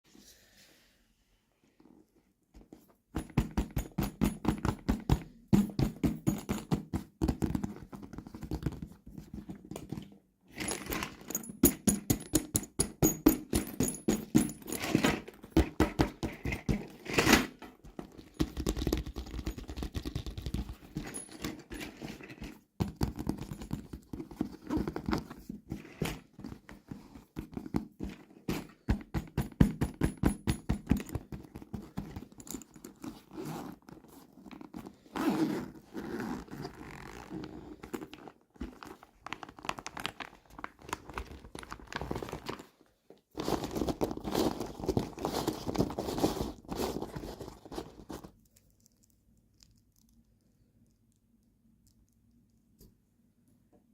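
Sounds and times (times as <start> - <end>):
plastic packaging clicking and tapping: 18.0 - 20.8, 38.8 - 42.7.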